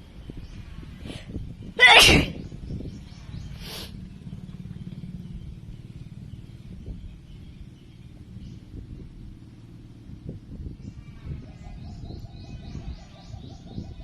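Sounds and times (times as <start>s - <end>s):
woman sneezing: 1.8s - 2.4s.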